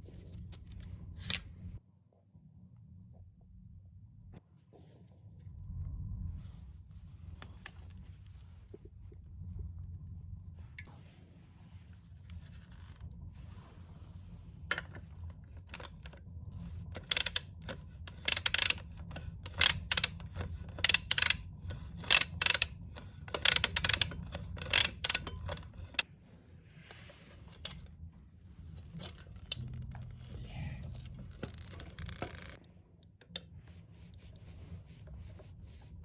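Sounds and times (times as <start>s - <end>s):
steady low hum: 0.0s - 36.0s
metal tools clinking and scraping: 27.5s - 32.6s.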